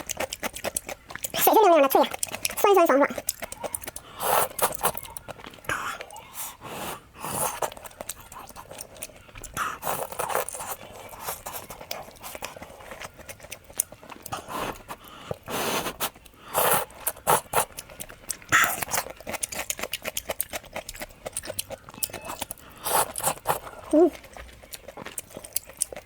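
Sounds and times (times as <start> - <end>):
crunching and chewing: 0.0 - 26.0
slurp: 4.2 - 5.0, 14.3 - 17.8, 22.2 - 24.2
mouth smacks: 7.2 - 19.4, 20.0 - 25.8.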